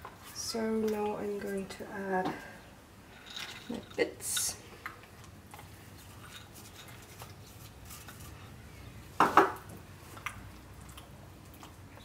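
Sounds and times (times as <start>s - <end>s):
utensils clattering: 3.1s - 4.4s.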